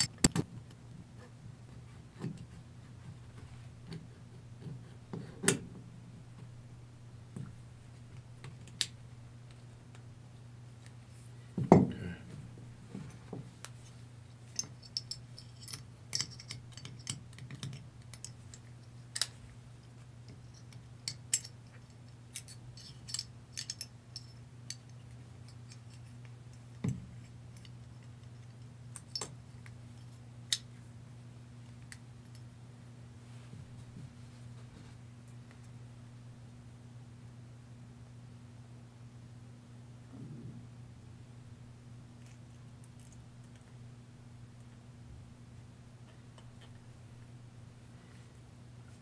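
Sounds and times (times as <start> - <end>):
steady low hum: 0.0 - 49.0
small metallic clicks and clinks: 14.5 - 19.4, 20.3 - 29.4.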